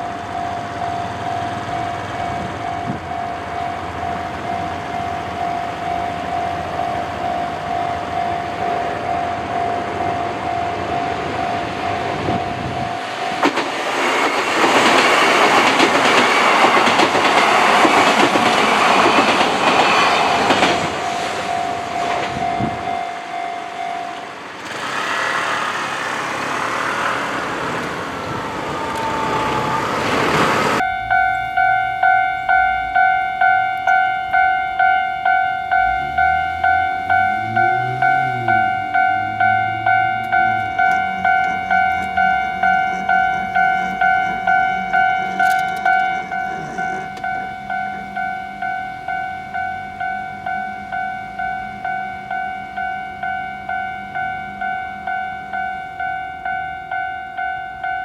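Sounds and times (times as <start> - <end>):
level crossing warning bell: 0.0 - 26.9, 27.9 - 58.0
electric train passing: 0.0 - 58.0
train whine: 0.0 - 58.0
train wheels clattering over rail joints: 12.0 - 22.8.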